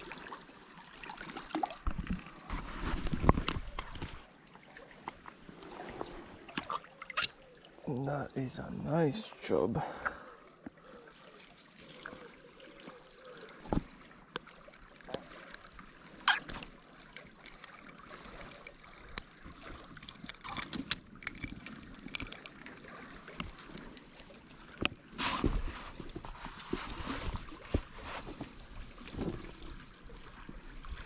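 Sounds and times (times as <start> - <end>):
water trickling and lapping: 0.0 - 31.0
small knocks and clicks: 19.9 - 22.6.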